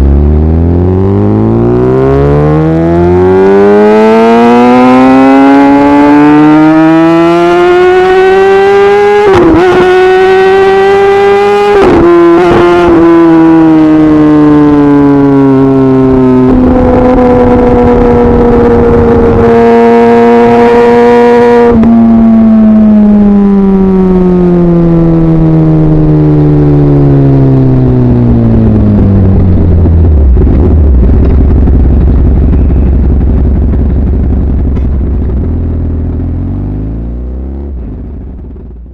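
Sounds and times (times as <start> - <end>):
motorcycle engine revving and idling: 0.0 - 38.9.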